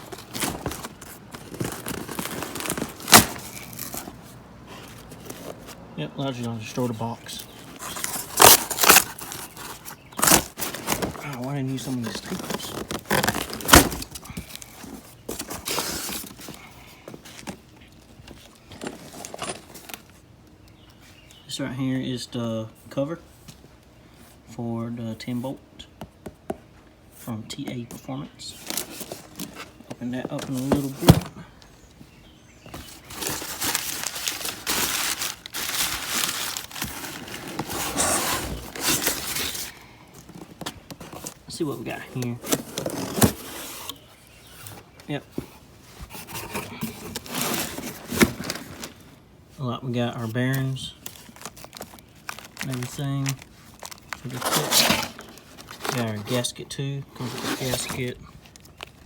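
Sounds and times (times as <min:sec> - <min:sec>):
cardboard box tearing: 0:00.0 - 0:04.2, 0:07.7 - 0:16.5, 0:32.8 - 0:40.4, 0:42.4 - 0:44.0, 0:46.1 - 0:49.0, 0:51.1 - 0:56.2.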